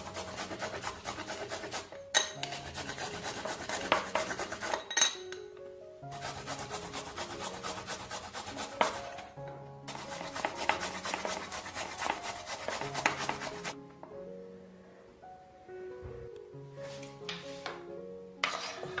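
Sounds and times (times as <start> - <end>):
fast scraping strokes: 0.0 - 4.8, 6.1 - 9.3, 9.9 - 13.8
background music: 0.0 - 19.0.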